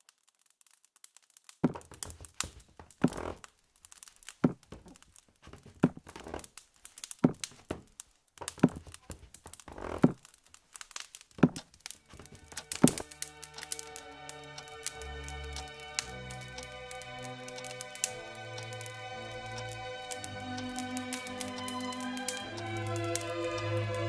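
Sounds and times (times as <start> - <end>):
crinkling and rustling: 0.0 - 23.3
heavy thuds: 1.6 - 3.4, 7.2 - 10.2, 11.4 - 13.0.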